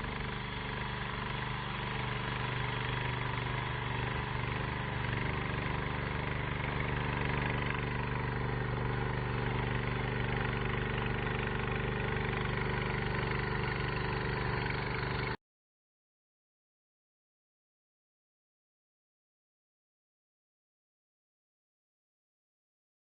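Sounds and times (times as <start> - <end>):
cultivator engine running: 0.0 - 15.4.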